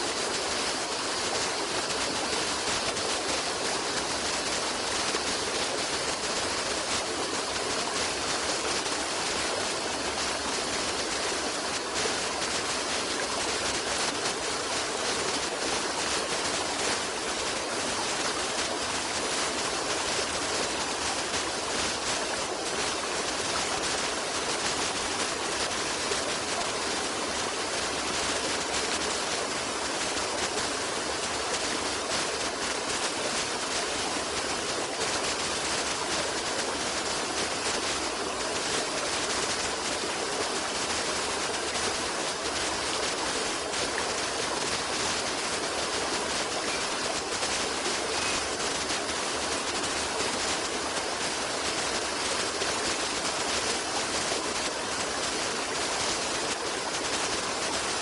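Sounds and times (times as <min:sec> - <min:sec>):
flowing water rushing: 0:00.0 - 0:58.0.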